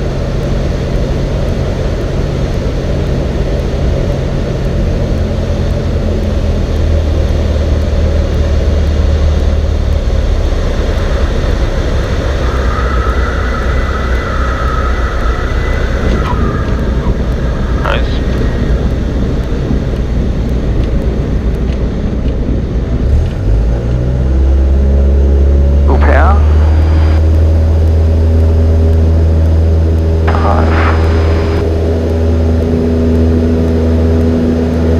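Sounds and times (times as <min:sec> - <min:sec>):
aircraft engine droning: 0:00.0 - 0:34.9
steady high whistle: 0:12.4 - 0:17.1
brief radio hiss: 0:30.3 - 0:31.6.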